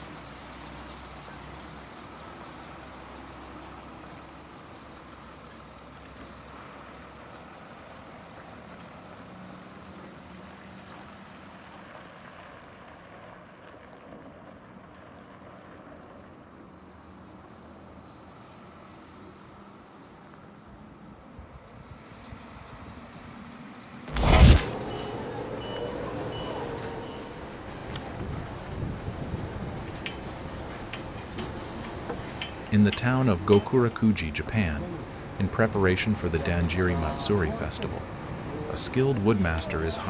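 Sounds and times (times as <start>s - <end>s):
heavy machinery running: 24.1s - 25.3s.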